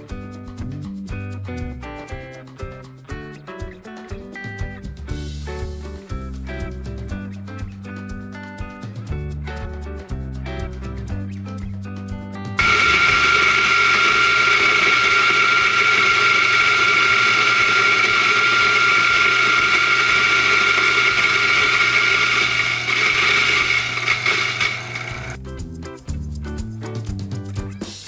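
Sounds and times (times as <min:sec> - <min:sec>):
coffee grinder motor whine: 0:12.6 - 0:25.4.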